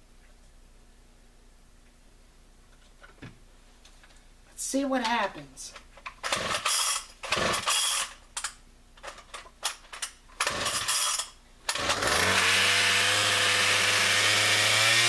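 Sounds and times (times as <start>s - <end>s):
chainsaw starter cord pulls: 6.2s - 8.2s, 9.9s - 15.0s
chainsaw engine idling: 11.8s - 15.0s.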